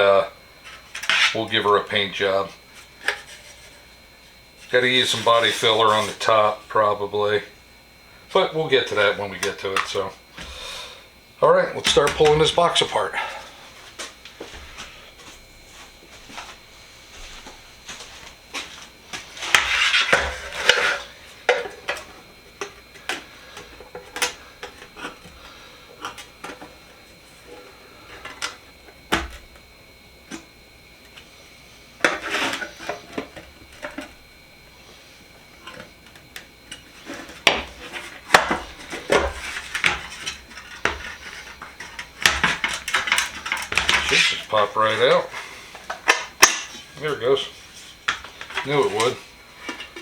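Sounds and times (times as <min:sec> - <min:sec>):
metal clanks and scrapes: 0:19.4 - 0:23.2.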